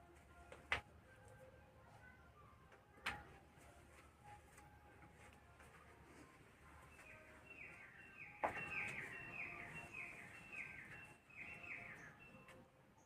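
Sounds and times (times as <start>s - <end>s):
bird chirping: 6.9s - 13.0s.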